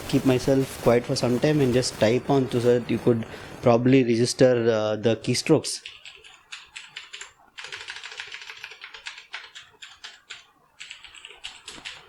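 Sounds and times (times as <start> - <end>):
mechanical keyboard typing: 5.8 - 12.0.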